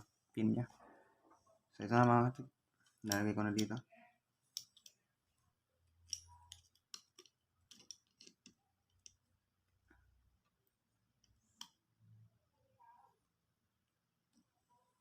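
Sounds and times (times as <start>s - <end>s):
small tools clicking and tapping: 2.8s - 3.8s, 4.5s - 5.0s, 5.9s - 9.2s.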